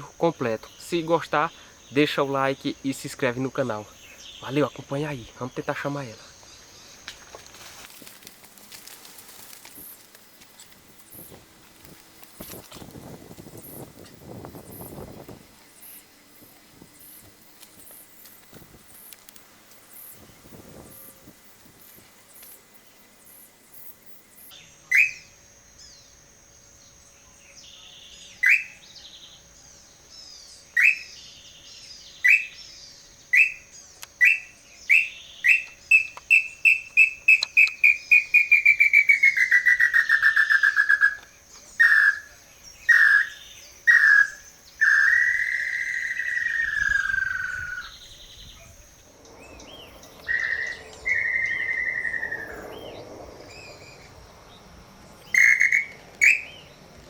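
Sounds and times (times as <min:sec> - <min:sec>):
whistled bird call: 0:24.9 - 0:25.3, 0:27.8 - 0:29.1, 0:30.7 - 0:31.2, 0:32.2 - 0:32.6, 0:33.3 - 0:41.2, 0:41.8 - 0:48.7, 0:49.5 - 0:54.0, 0:55.2 - 0:56.7.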